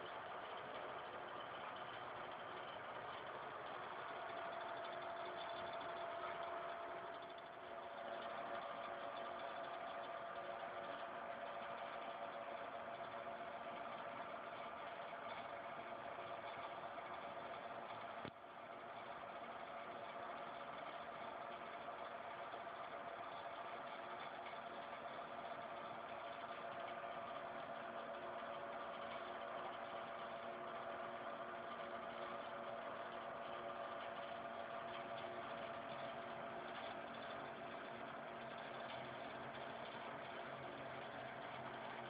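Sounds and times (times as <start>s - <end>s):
milling machine humming: 0.0s - 42.0s.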